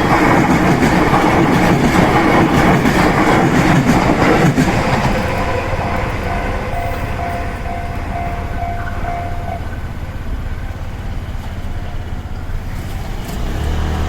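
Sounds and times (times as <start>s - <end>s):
low rumble of traffic: 0.0s - 14.0s
level crossing warning bell: 4.0s - 10.3s.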